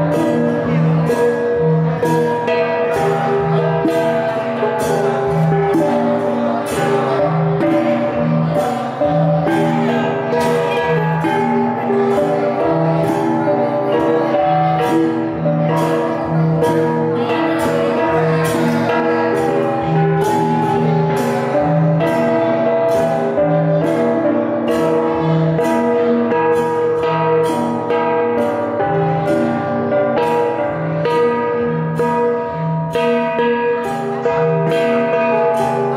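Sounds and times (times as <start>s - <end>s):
gongs struck in a pattern: 0.0s - 35.9s.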